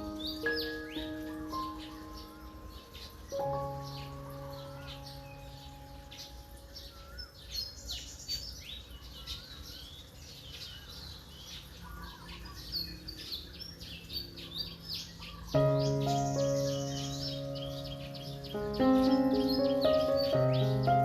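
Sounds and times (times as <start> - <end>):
soft music: 0.0 - 8.5, 15.5 - 21.0
birds chirping and twittering: 0.0 - 21.0
loud sustained chord: 15.6 - 21.0.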